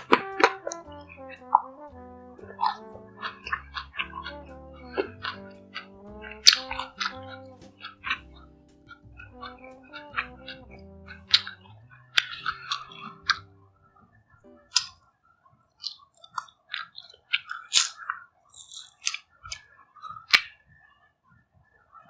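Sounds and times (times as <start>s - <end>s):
light background music: 0.0s - 15.1s
fruit crunching and chewing: 7.8s - 13.5s, 14.7s - 15.0s, 15.8s - 20.6s.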